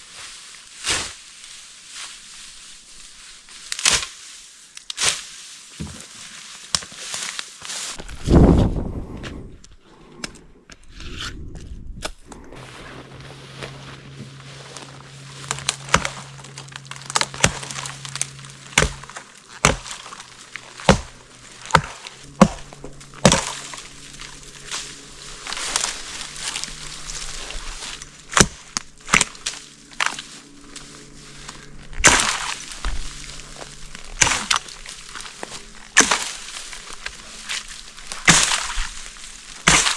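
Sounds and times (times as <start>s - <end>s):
wood cracking and splitting: 3.6s - 8.6s, 13.6s - 39.9s
chopping strikes on wood: 15.6s - 16.2s, 18.8s - 20.2s, 20.8s - 23.6s, 28.3s - 29.3s, 32.0s - 32.6s, 36.0s - 36.3s, 38.2s - 38.8s, 39.6s - 39.9s.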